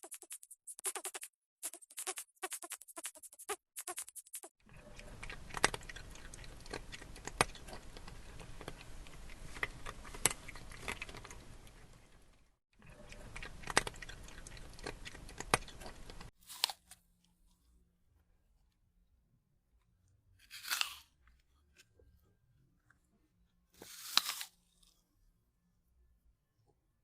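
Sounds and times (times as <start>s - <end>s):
animal chewing food: 4.7s - 16.8s.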